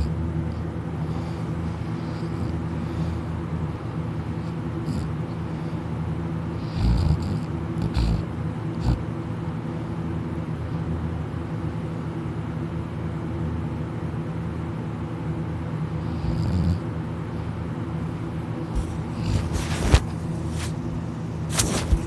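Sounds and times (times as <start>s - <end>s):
steady low hum: 0.0s - 22.0s
person snoring: 6.6s - 9.0s.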